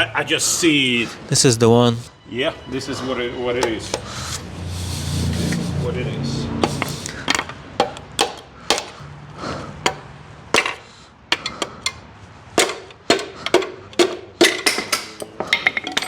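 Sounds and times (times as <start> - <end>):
tools knocking on metal: 3.6 - 4.1, 9.8 - 12.0, 12.6 - 16.0.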